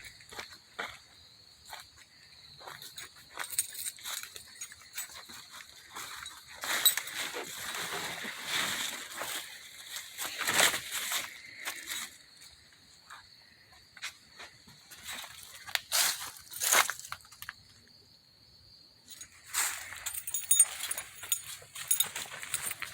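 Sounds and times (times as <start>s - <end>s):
insects chirping: 0.0s - 22.9s
rustling and crunching: 2.6s - 12.1s, 14.9s - 17.6s, 19.1s - 22.9s.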